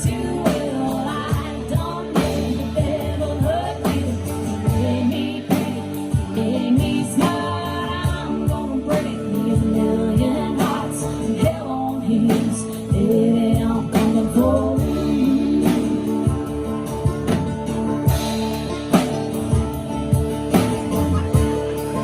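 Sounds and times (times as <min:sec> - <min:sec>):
woman singing country song: 0:00.0 - 0:22.0
instrumental backing with beat: 0:12.3 - 0:22.0.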